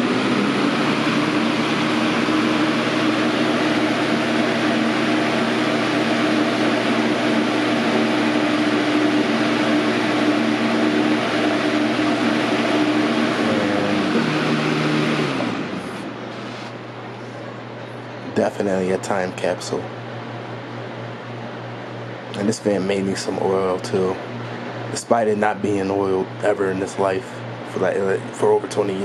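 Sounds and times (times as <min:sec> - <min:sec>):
box fan air rushing: 0:00.0 - 0:17.5
low motor hum: 0:00.0 - 0:29.0.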